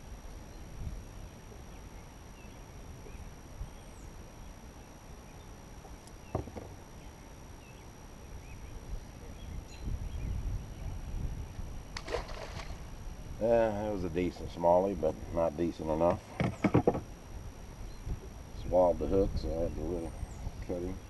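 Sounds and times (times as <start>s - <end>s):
wind on microphone: 0.6s - 1.4s, 8.7s - 13.5s, 16.4s - 21.0s
water: 11.8s - 15.4s.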